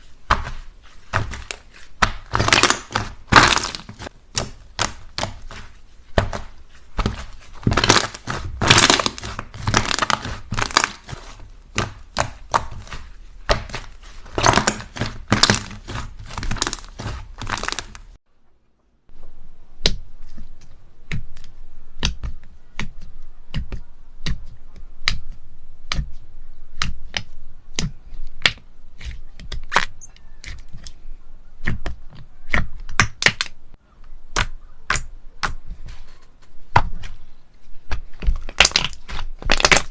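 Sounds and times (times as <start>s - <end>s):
slime crackling and popping: 0.3s - 18.2s, 38.3s - 39.9s.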